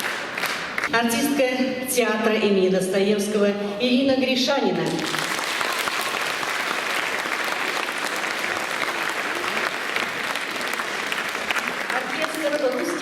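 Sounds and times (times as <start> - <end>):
audience applauding: 0.0 - 0.9, 4.9 - 13.0.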